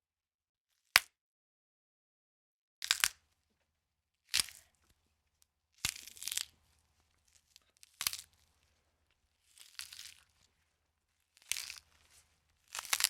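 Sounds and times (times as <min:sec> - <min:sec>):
bone cracking: 0:02.8 - 0:03.2, 0:07.5 - 0:08.3, 0:09.6 - 0:10.3, 0:11.4 - 0:11.9, 0:12.7 - 0:13.0.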